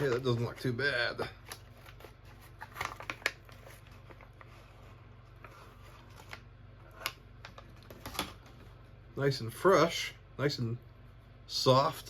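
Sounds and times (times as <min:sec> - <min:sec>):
low steady hum: 0:00.0 - 0:12.0
food pouch rustling: 0:01.4 - 0:04.6.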